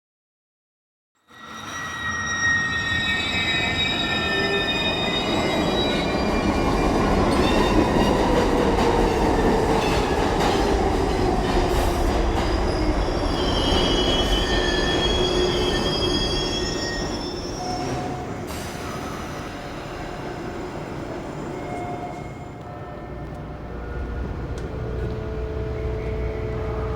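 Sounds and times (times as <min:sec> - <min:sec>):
metal squealing and screeching: 0:01.4 - 0:06.8.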